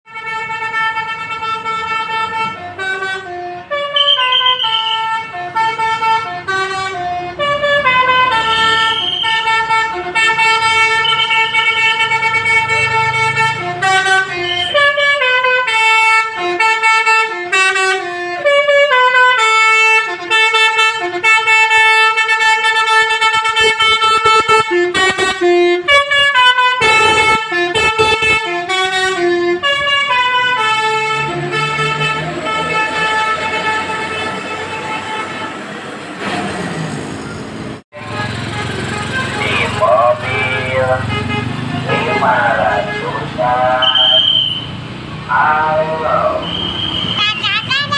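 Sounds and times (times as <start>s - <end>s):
musical bus air horn: 0.1s - 36.6s, 38.0s - 44.7s
engine rumble: 28.6s - 47.9s.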